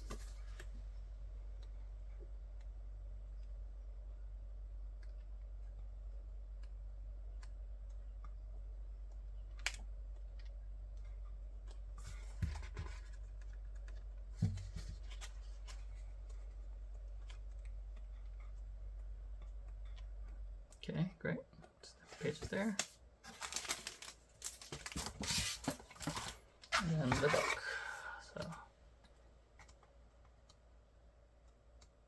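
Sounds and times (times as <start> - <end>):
steady low hum: 0.0 - 32.0
paper rustling: 22.0 - 27.7.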